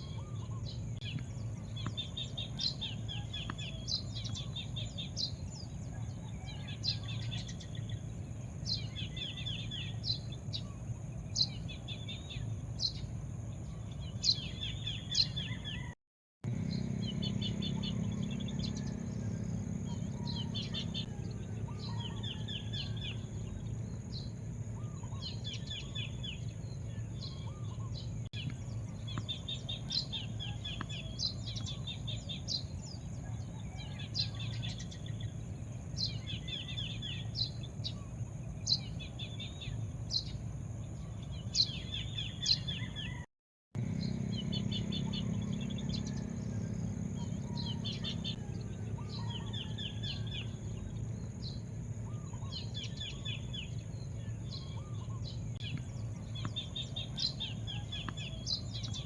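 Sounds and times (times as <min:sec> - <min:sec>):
steady low rumble: 0:43.8 - 0:59.0.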